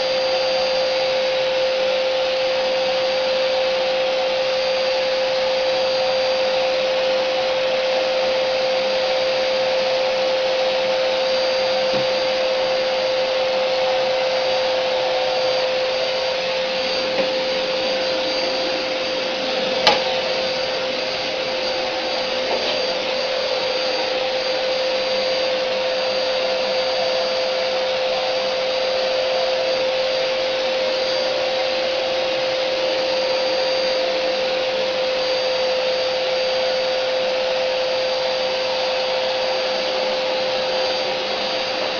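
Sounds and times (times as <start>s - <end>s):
vacuum cleaner running: 0.0s - 41.9s
sharp click: 19.8s - 20.1s.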